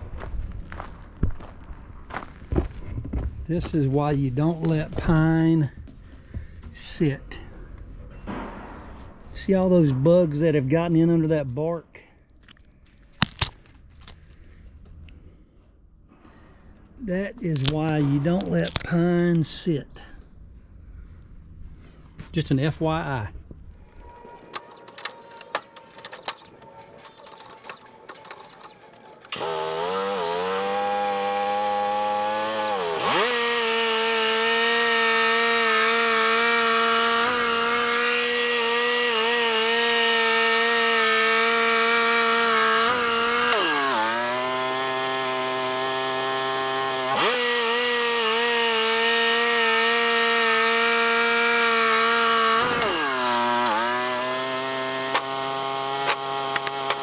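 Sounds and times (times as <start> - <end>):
sawmill engine running: 23.8 - 57.0
band saw cutting log: 23.9 - 57.0.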